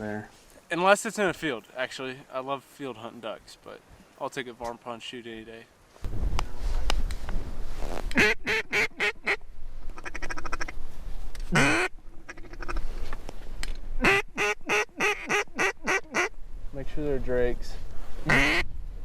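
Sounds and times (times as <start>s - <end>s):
wind rumble on microphone: 6.0s - 8.2s, 16.3s - 19.0s
duck call quacking: 8.1s - 9.4s, 10.0s - 10.7s, 11.5s - 12.8s, 14.0s - 16.3s, 18.3s - 18.6s.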